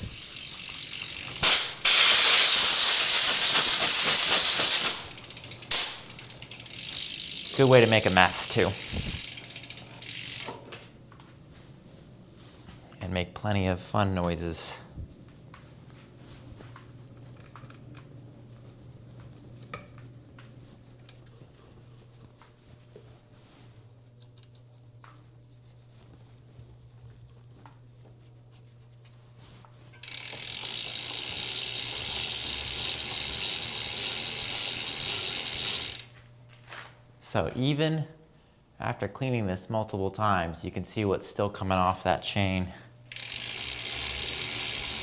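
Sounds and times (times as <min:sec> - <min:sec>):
compressed air blast hissing: 0:01.4 - 0:06.2.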